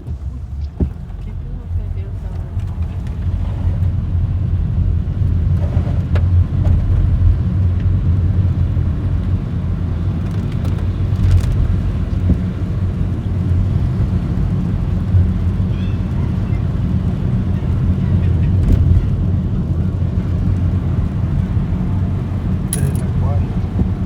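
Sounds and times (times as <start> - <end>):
car road and engine rumble: 0.0 - 24.0.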